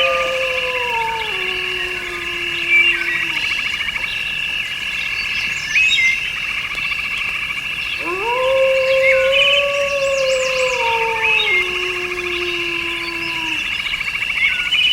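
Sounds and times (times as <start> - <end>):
long low rising call: 0.0 - 3.7, 8.0 - 13.9
insects chirping: 0.0 - 14.9.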